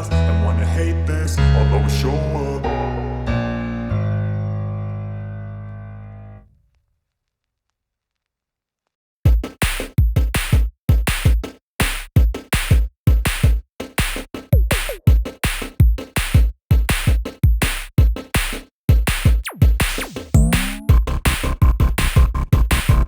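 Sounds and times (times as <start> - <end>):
drum-machine beat with heavy bass: 9.3 - 23.0.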